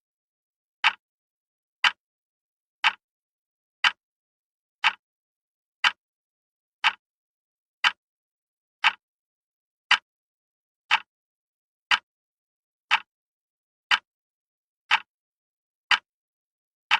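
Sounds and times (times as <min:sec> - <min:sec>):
wall clock ticking: 0:00.8 - 0:01.0, 0:02.8 - 0:03.0, 0:03.8 - 0:04.0, 0:04.8 - 0:05.0, 0:05.8 - 0:06.0, 0:06.8 - 0:07.0, 0:07.8 - 0:08.0, 0:08.8 - 0:09.0, 0:09.9 - 0:10.1, 0:10.9 - 0:11.1, 0:11.9 - 0:12.1, 0:12.9 - 0:13.1, 0:13.9 - 0:14.1, 0:14.9 - 0:15.1, 0:15.9 - 0:16.1.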